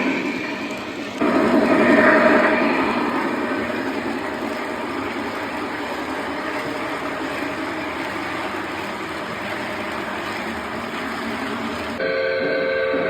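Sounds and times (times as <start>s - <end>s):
model train running on track: 0.0s - 13.0s.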